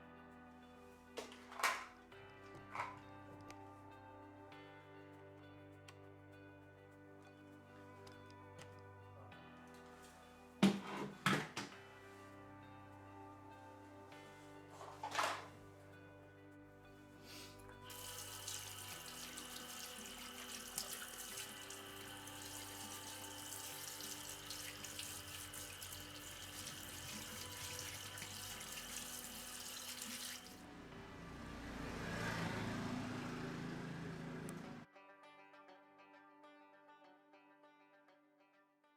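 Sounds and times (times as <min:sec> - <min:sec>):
tap water running: 0:17.9 - 0:30.6.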